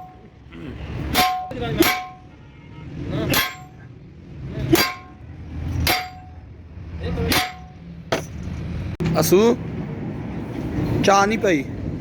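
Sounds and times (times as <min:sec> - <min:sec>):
hammer clanging on steel: 0:00.0 - 0:00.3, 0:01.0 - 0:02.4, 0:03.2 - 0:03.9, 0:04.6 - 0:06.5, 0:07.1 - 0:08.5.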